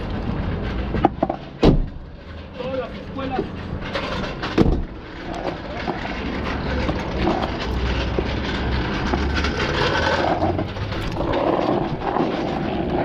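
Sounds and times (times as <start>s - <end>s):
road and wind noise: 0.0s - 13.0s
vehicle engine rumble: 0.0s - 13.0s.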